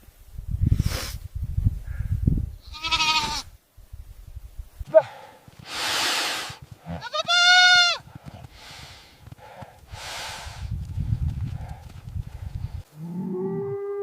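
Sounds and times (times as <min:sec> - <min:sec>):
short bursts of hiss: 0:00.7 - 0:01.3, 0:05.6 - 0:06.7, 0:09.9 - 0:10.7
sheep bleating: 0:02.7 - 0:03.4, 0:06.8 - 0:08.0.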